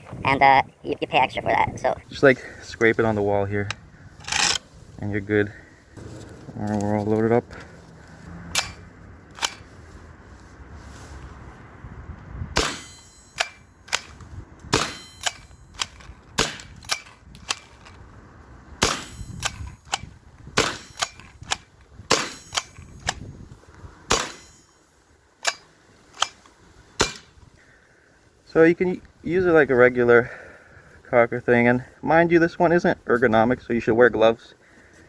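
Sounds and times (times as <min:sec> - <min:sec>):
paintball pistol firing pops: 0:18.8 - 0:23.2, 0:27.0 - 0:27.4.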